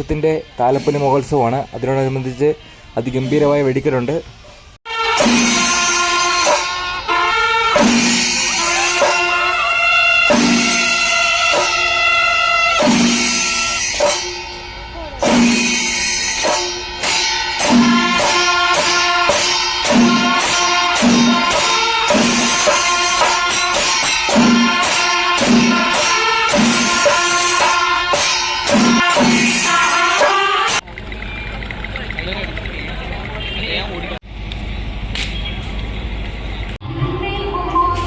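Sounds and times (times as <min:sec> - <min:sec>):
music with jingling percussion: 0:05.1 - 0:07.0, 0:07.8 - 0:31.4
heavy beat: 0:07.7 - 0:30.8.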